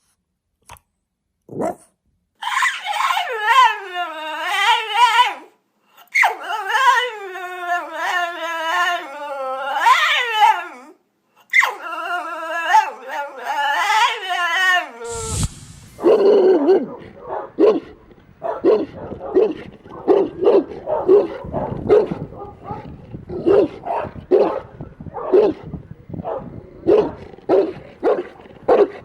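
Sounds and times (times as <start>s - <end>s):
dog howling high-pitched yowls: 2.4s - 15.1s
dog barking deep barks: 16.0s - 29.0s.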